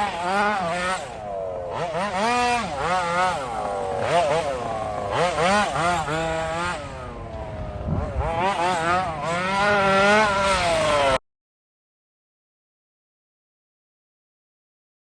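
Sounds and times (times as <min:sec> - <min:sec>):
rc car engine revving: 0:00.0 - 0:11.2.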